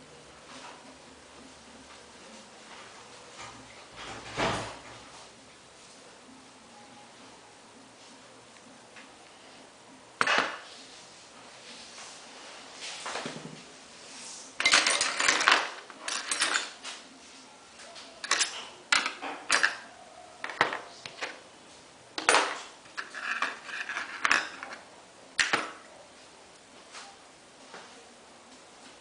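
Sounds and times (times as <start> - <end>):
metal objects clinking and clattering: 14.6 - 16.8, 18.2 - 21.4, 22.2 - 24.8.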